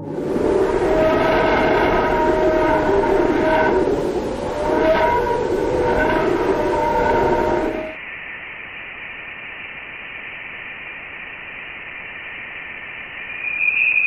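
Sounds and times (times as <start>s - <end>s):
high whistling tone: 0.0s - 8.0s, 13.0s - 14.0s
static hiss: 0.0s - 14.0s.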